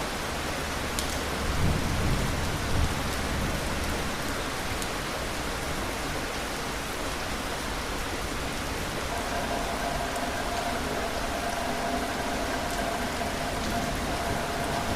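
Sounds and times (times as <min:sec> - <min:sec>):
steady rain falling: 0:00.0 - 0:14.9
distant thunder rumble: 0:09.1 - 0:14.9.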